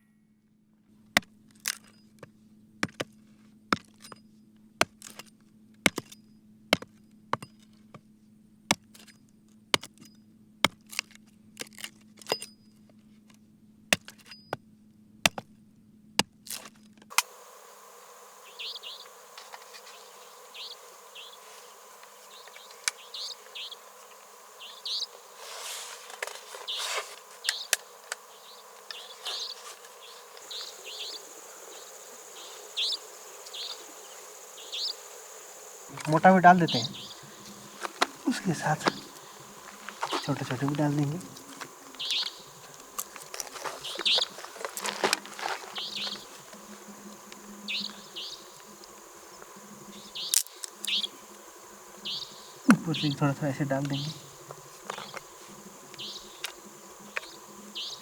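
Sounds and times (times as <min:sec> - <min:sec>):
insects chirping: 0:17.1 - 0:58.0
steady high hum: 0:17.2 - 0:58.0.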